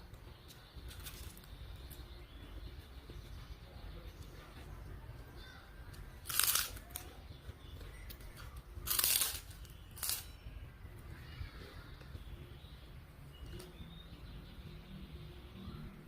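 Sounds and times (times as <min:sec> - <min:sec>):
crunching bites into crisp food: 0:06.2 - 0:07.1, 0:08.4 - 0:10.3.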